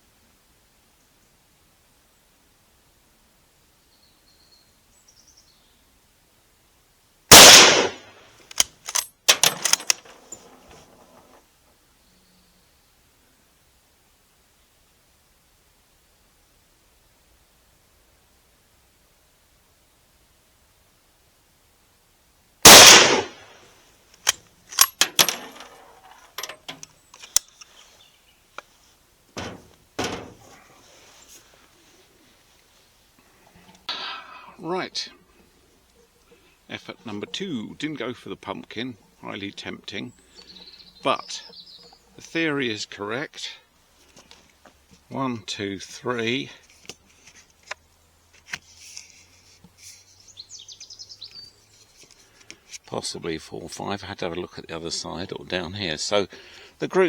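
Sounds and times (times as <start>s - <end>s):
rifle shot: 7.3s - 8.2s, 22.7s - 23.5s
rifle bolt clicking and clacking: 7.3s - 10.4s, 22.7s - 23.4s, 24.2s - 27.6s.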